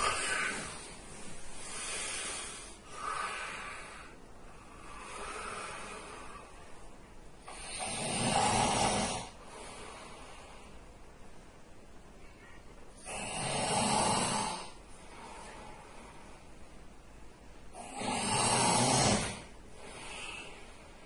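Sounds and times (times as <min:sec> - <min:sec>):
man snoring: 0:07.5 - 0:09.4, 0:13.0 - 0:14.8, 0:17.7 - 0:20.4.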